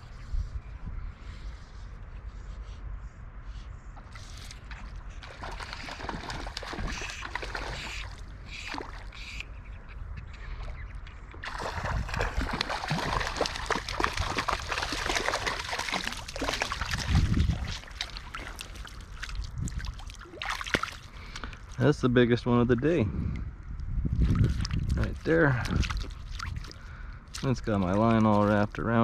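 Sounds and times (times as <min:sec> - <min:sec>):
river water splashing: 0:04.0 - 0:09.4, 0:11.4 - 0:21.8, 0:24.4 - 0:28.7.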